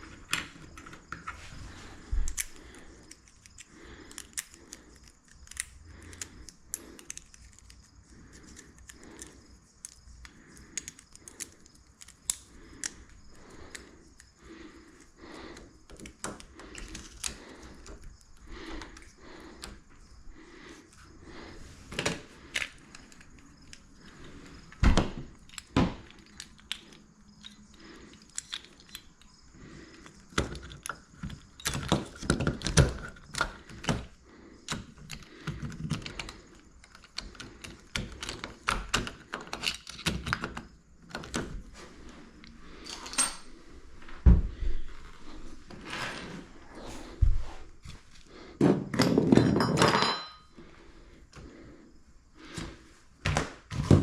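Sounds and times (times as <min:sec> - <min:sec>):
hard objects knocking and clicking: 0:30.0 - 0:34.1, 0:48.6 - 0:50.4.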